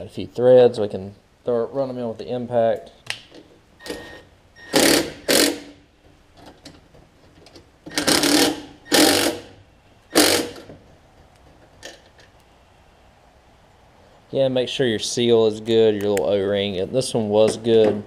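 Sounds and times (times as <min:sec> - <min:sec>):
impact driver hammering: 0:04.7 - 0:05.7, 0:07.9 - 0:09.5, 0:10.1 - 0:10.7.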